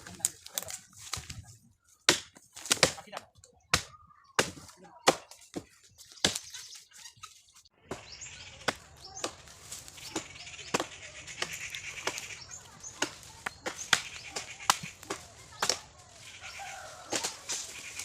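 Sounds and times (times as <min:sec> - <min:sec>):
chopping strikes on wood: 0:02.1 - 0:06.5, 0:07.8 - 0:15.9, 0:17.1 - 0:17.7.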